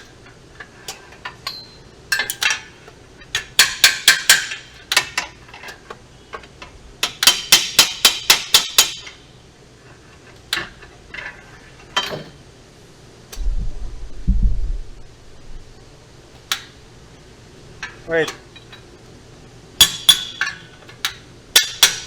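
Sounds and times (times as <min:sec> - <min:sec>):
metal tool tapping on metal: 0:00.9 - 0:02.6, 0:03.4 - 0:09.2, 0:19.8 - 0:22.0.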